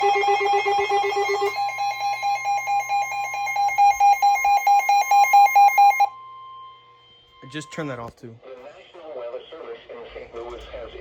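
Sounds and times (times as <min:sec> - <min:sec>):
alarm beeping rapidly: 0:00.0 - 0:08.0
steady warning tone: 0:00.0 - 0:11.0.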